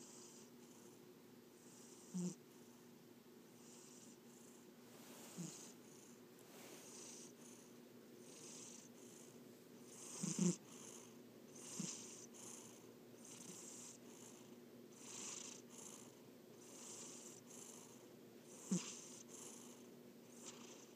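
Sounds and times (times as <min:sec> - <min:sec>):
cat snoring: 0:00.0 - 0:01.0, 0:01.6 - 0:02.4, 0:03.6 - 0:04.6, 0:05.3 - 0:06.2, 0:06.8 - 0:20.9
cat snort: 0:01.7 - 0:02.4, 0:05.2 - 0:06.2, 0:06.8 - 0:20.9.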